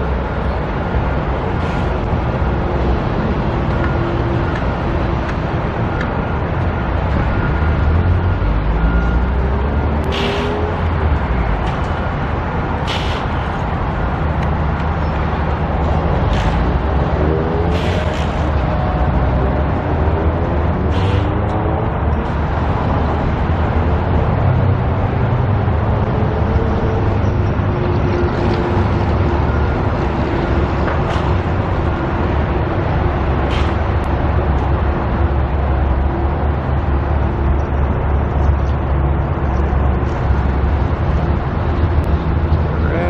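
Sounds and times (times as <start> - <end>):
road traffic rumble: 0.0 - 43.0.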